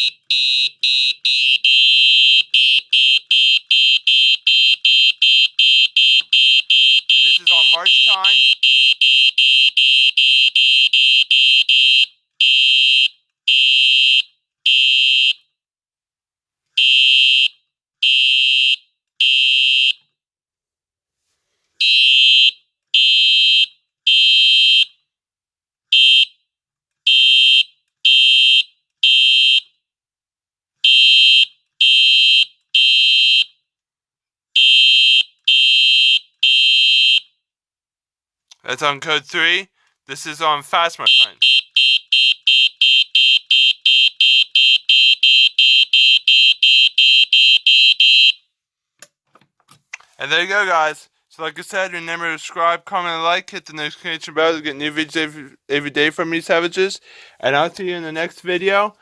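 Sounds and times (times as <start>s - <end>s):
fire alarm horn blaring: 0.0s - 15.4s, 41.0s - 48.4s.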